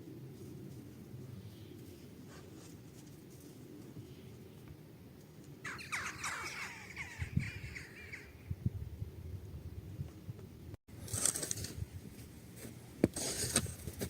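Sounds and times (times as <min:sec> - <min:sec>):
crows cawing: 0:05.7 - 0:08.3.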